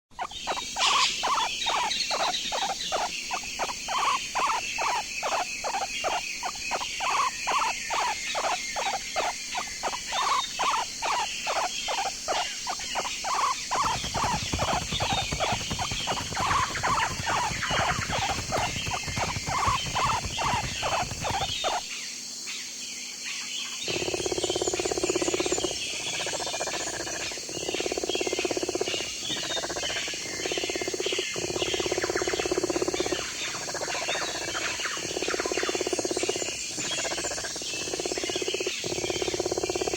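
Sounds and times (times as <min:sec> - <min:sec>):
animal calling rhythmically: 0:00.2 - 0:21.9.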